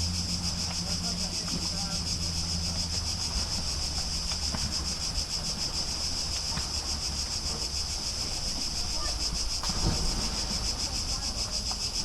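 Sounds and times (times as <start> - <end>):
cicadas singing: 0.0 - 12.0
low steady hum: 9.3 - 12.0.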